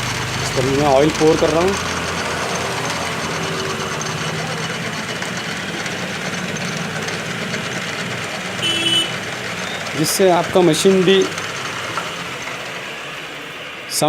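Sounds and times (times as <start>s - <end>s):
lathe gears running: 0.0s - 14.0s.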